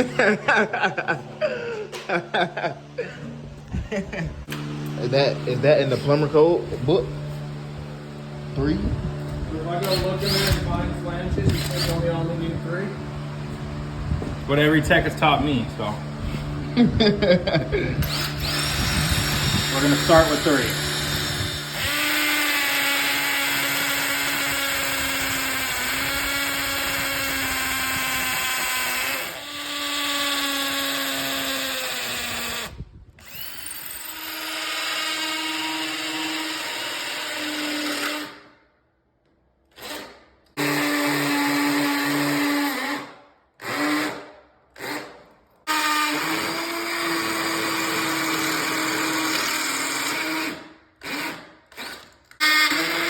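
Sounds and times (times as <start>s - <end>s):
power drill drilling into concrete: 9.8s - 10.8s, 11.5s - 12.2s, 18.0s - 38.5s, 39.7s - 53.0s.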